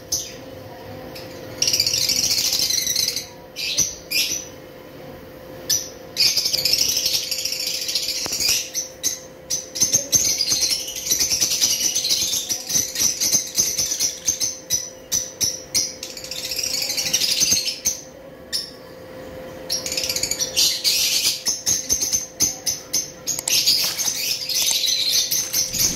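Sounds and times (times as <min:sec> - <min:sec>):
small parrots chattering: 0:01.2 - 0:04.6, 0:05.6 - 0:18.8, 0:19.7 - 0:25.9.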